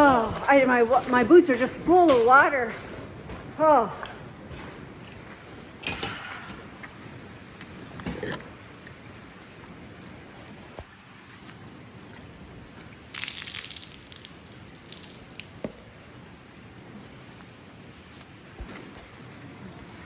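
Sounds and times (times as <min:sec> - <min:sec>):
floodwater sloshing and dripping: 0:00.0 - 0:02.8, 0:06.1 - 0:20.0
water splash: 0:13.0 - 0:15.9.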